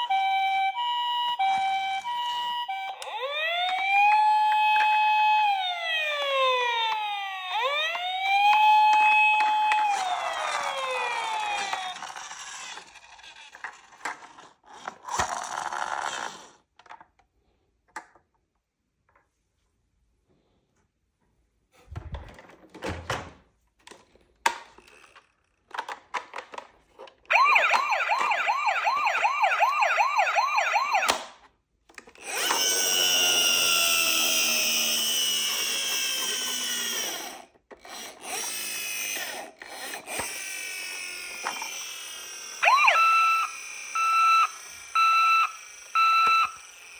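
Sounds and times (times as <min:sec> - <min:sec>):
toy siren fast warbling yelp: 0:00.0 - 0:12.2, 0:27.3 - 0:31.2, 0:41.6 - 0:46.9
siren with falling tones: 0:00.0 - 0:12.3, 0:27.3 - 0:31.2, 0:41.3 - 0:46.9.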